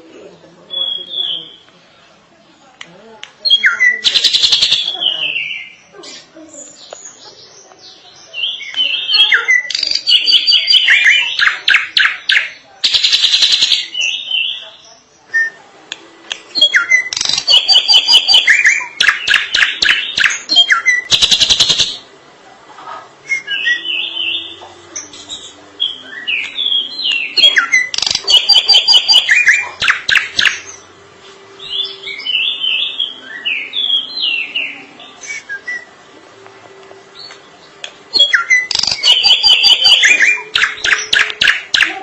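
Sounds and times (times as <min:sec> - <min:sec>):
bird chattering song: 0:03.4 - 0:15.1, 0:16.5 - 0:22.1, 0:23.3 - 0:30.9, 0:31.7 - 0:35.9, 0:37.2 - 0:42.0
bird whistled notes: 0:38.1 - 0:41.9.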